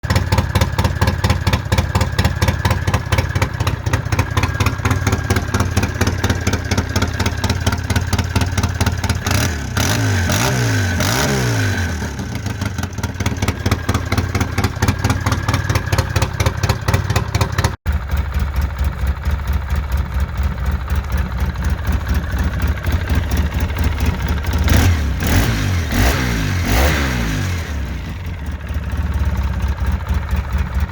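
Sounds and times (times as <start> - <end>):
atv engine idling and revving: 0.0 - 30.9.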